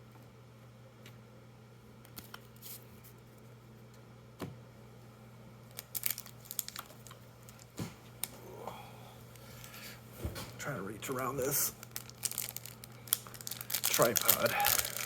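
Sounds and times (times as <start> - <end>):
low room hum: 0.0 - 15.0
foil wrapper crinkling and tearing: 5.7 - 8.3, 11.3 - 15.0.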